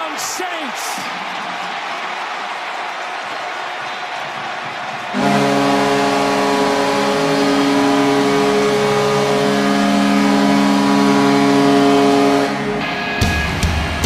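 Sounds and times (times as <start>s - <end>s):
crowd noise: 0.0s - 9.7s
hockey goal horn: 5.1s - 12.8s.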